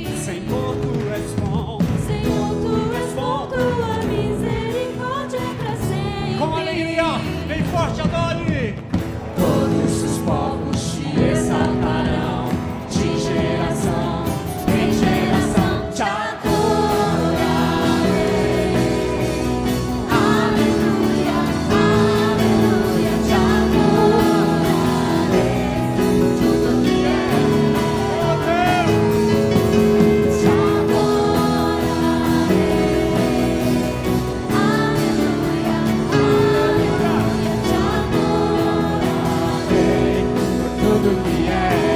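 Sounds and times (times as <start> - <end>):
voices singing: 0.0 - 8.5, 9.2 - 41.9
held instrumental chords: 8.8 - 41.9.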